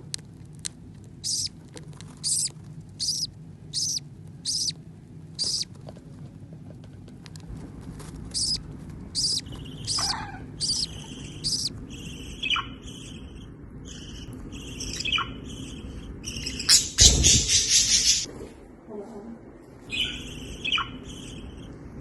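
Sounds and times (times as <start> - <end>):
budgerigars chirping: 1.2 - 1.5, 2.2 - 4.8, 5.4 - 5.7, 8.3 - 18.3, 19.9 - 21.7
loud harsh bird burst: 1.2 - 1.5, 2.2 - 4.7, 5.4 - 5.7, 8.3 - 8.6, 9.2 - 18.3.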